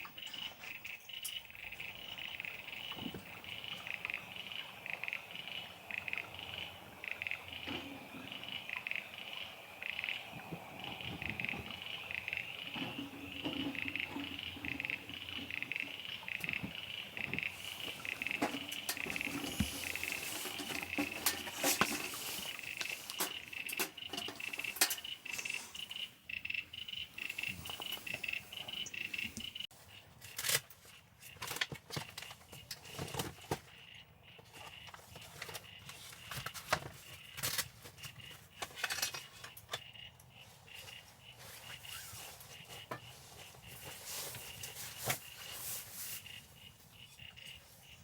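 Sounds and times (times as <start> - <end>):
frogs calling: 0.0 - 30.3, 30.9 - 48.0
wood fire crackling: 14.7 - 26.2.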